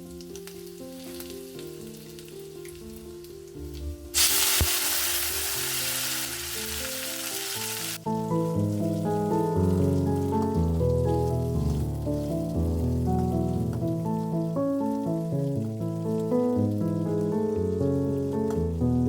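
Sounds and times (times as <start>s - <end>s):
hot oil sizzling in a pan: 0.0s - 18.8s
simple melody music track: 6.6s - 19.0s
faint oil crackles: 8.6s - 18.6s.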